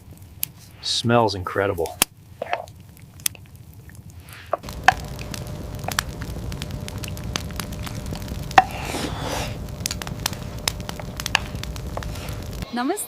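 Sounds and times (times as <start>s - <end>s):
sharp crackles and clicks: 1.8s - 12.6s
steady low rumble: 4.6s - 12.6s.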